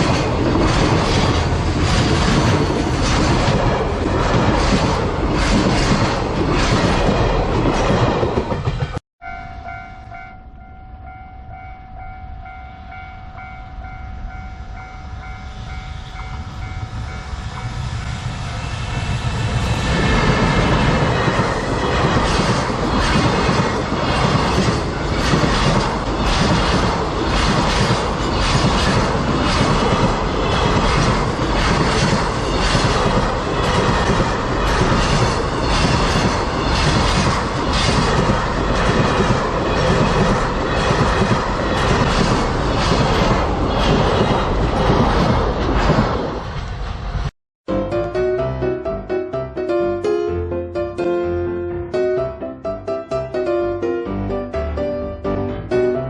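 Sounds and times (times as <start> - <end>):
train wheels clicking over rail joints: 0.0 - 9.0, 19.6 - 47.3
crossing warning bell ringing: 8.8 - 19.6.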